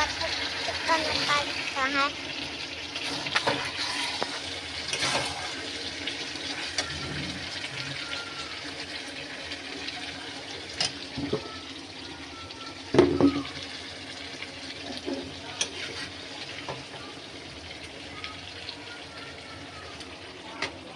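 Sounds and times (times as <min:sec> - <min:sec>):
steady cooking hiss: 0:00.0 - 0:20.9
kitchen knocks and clatters: 0:12.9 - 0:13.5.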